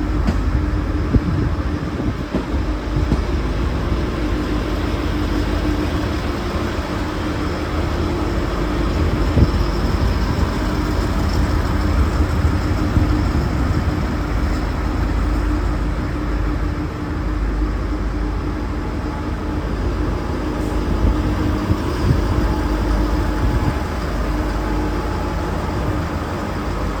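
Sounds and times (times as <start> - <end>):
diesel railcar rumble: 0.0 - 27.0.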